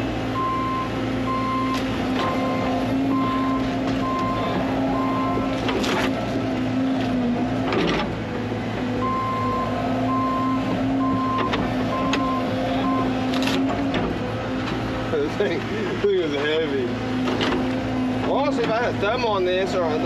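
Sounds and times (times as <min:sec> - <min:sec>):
diesel engine running: 0:00.0 - 0:20.0
travel alarm beeping: 0:00.4 - 0:05.5, 0:09.0 - 0:13.1.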